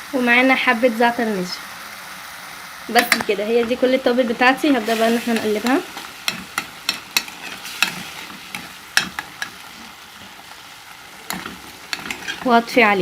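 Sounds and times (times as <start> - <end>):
steady sizzle: 0.0 - 13.0
spoon stirring sauce: 5.3 - 12.5
spoon knocking against pan: 6.3 - 9.6.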